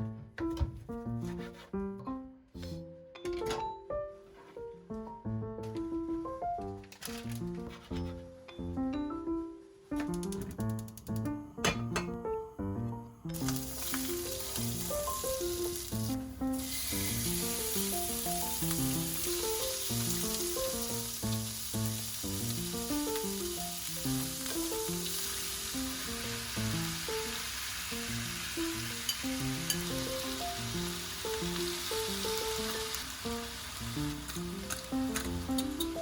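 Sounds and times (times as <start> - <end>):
plucked background music: 0.0 - 27.4, 28.0 - 36.0
food sizzling in a pan: 13.2 - 36.0.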